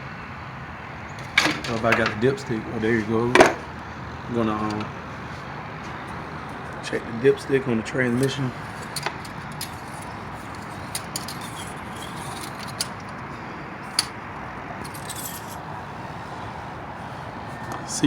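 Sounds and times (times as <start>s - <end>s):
metallic clicks and rattles: 1.2s - 2.2s, 8.1s - 14.2s, 14.8s - 15.7s.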